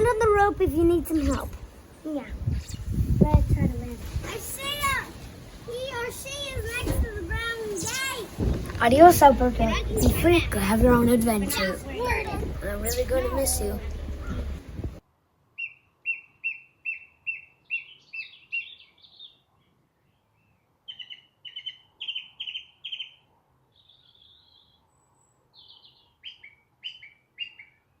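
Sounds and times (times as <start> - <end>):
bird chirping: 2.3 - 3.2, 7.7 - 15.0, 15.6 - 28.0.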